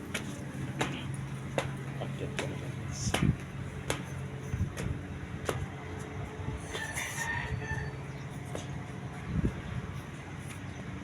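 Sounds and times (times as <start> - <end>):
low hum: 0.0 - 11.0
rooster crowing: 6.7 - 8.4.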